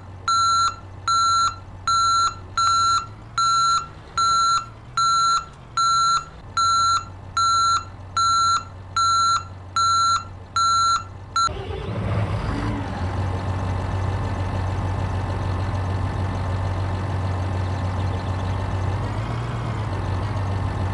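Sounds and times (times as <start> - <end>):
vehicle engine running: 0.0 - 20.9
reversing alarm beeping: 0.3 - 11.6.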